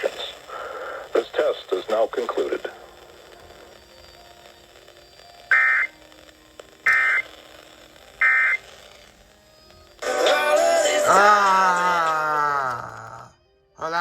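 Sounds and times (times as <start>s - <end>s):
buzzing digital data bursts: 0.0s - 11.0s
loud multi-pitch tone: 3.9s - 6.2s, 6.8s - 10.6s.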